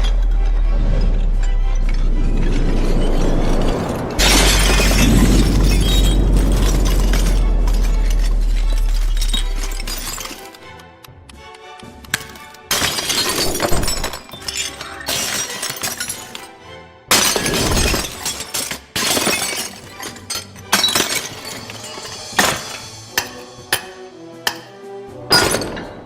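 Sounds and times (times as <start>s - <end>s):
background music: 0.0s - 26.0s
glass breaking and shattering: 2.4s - 10.6s, 12.1s - 16.5s, 17.1s - 24.7s, 25.3s - 25.9s
glass shards clinking: 2.9s - 10.6s, 12.1s - 16.5s, 17.1s - 23.9s, 24.5s - 24.7s.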